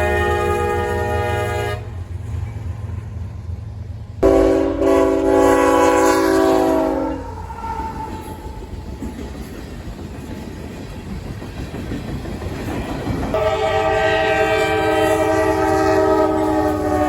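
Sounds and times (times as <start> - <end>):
locomotive air horn blasts: 0.0 - 2.0, 4.2 - 8.4, 13.4 - 17.0
passing train rumble: 0.0 - 17.0.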